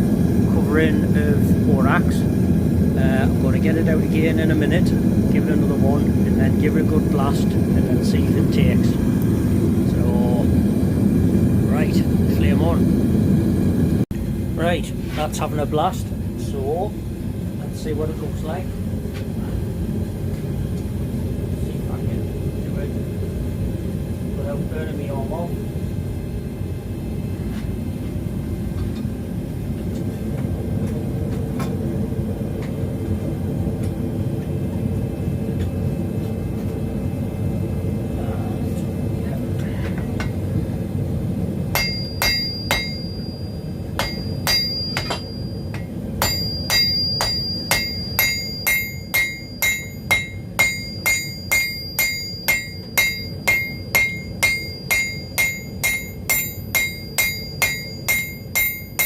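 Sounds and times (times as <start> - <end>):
gas forge burner rushing: 0.0 - 19.8, 39.6 - 59.0
hammer striking steel on anvil: 41.8 - 59.0.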